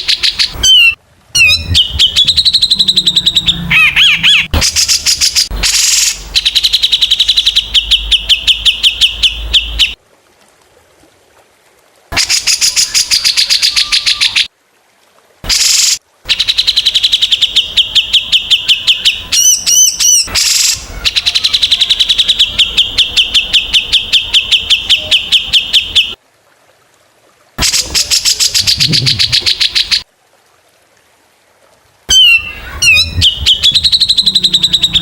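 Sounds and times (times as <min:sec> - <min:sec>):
songbird chirping: 0:00.0 - 0:10.0, 0:16.3 - 0:26.2, 0:32.1 - 0:35.0
bird whistled notes: 0:32.1 - 0:35.0.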